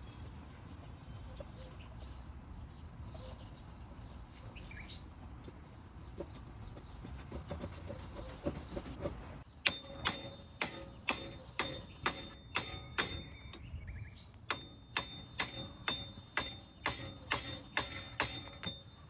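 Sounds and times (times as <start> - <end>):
hammer striking metal: 9.6 - 13.7, 14.5 - 19.0.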